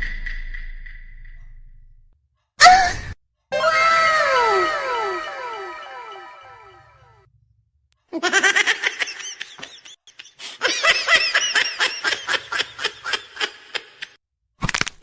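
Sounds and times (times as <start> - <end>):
person laughing: 8.2 - 14.2.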